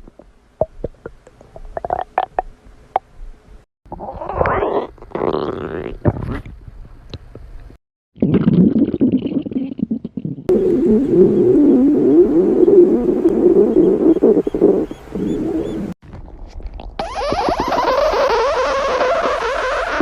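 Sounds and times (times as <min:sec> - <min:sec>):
stomach growling: 0:00.0 - 0:02.5, 0:03.9 - 0:06.5, 0:08.2 - 0:16.0.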